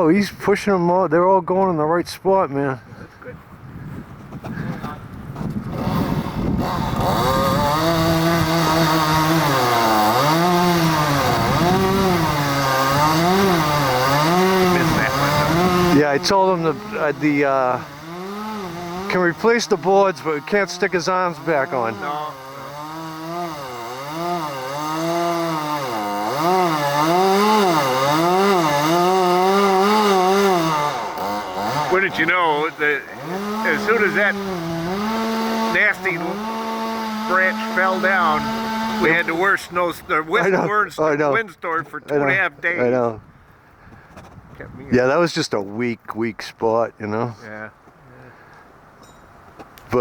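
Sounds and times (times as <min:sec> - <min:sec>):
chainsaw cutting wood: 0:04.4 - 0:43.0.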